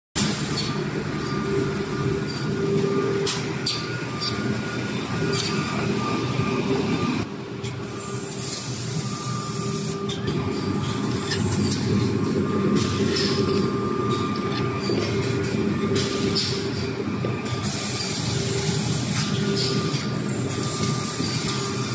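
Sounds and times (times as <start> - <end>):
machine motor hum: 0.2 - 21.9.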